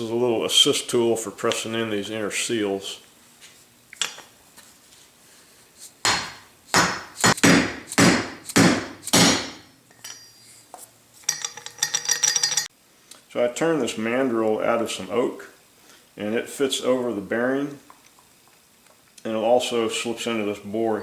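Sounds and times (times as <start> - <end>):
metallic ringing clatter: 9.9 - 10.6, 11.2 - 12.7.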